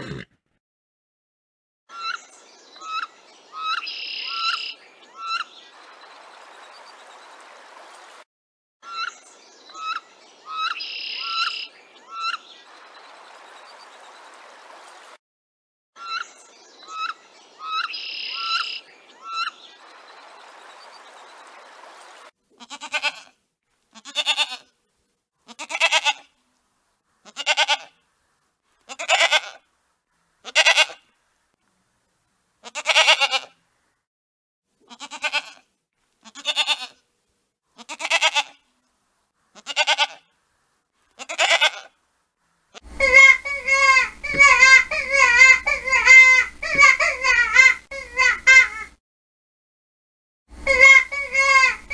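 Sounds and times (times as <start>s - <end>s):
farm animal bleating: 0.0s - 0.4s, 22.6s - 24.8s, 25.4s - 26.4s, 27.2s - 28.0s, 28.9s - 29.6s, 30.4s - 31.1s, 32.6s - 33.6s, 34.8s - 37.0s, 37.8s - 38.6s, 39.5s - 40.3s, 41.2s - 42.0s.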